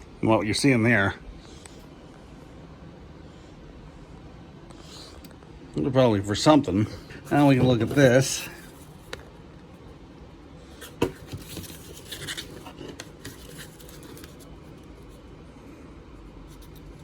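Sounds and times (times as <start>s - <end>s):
light scratching and rustling: 7.1s - 9.2s, 10.7s - 15.2s.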